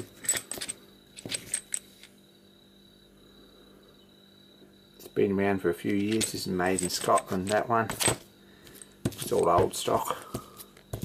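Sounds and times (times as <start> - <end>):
metal tool bits clinking: 0.0 - 2.0, 5.9 - 9.6.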